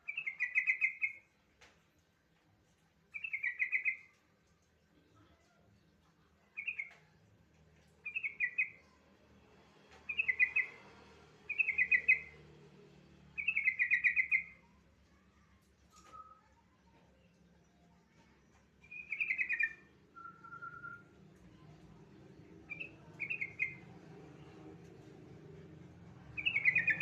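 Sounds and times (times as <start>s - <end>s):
bird chattering song: 0.0s - 1.2s, 3.2s - 4.2s, 6.5s - 7.0s, 8.0s - 9.0s, 10.0s - 10.8s, 11.5s - 12.4s, 13.4s - 15.3s, 18.2s - 21.7s, 22.5s - 24.6s, 26.3s - 27.0s.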